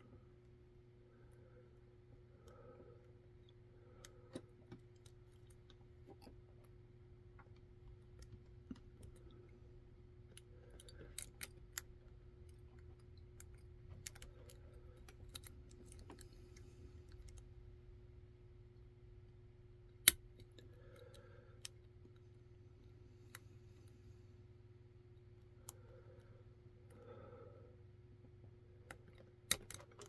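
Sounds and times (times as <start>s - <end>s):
lock pick metallic clicks: 20.0s - 21.8s, 28.9s - 30.0s.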